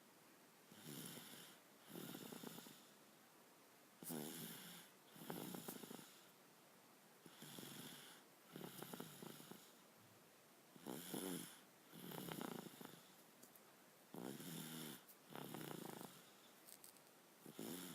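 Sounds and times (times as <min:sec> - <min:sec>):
person snoring: 0:04.0 - 0:06.3, 0:07.3 - 0:09.7, 0:10.8 - 0:13.1, 0:14.1 - 0:16.3, 0:17.5 - 0:17.9.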